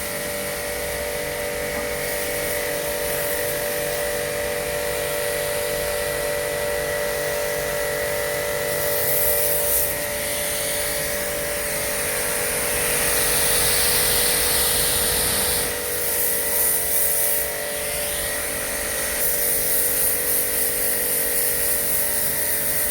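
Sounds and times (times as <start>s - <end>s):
pressure washer motor hum: 0.0s - 22.9s
water spray hissing: 8.8s - 22.9s.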